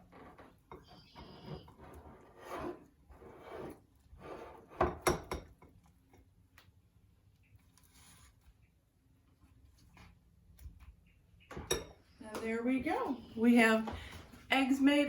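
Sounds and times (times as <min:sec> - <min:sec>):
utensil scraping a bowl: 0:00.0 - 0:05.4.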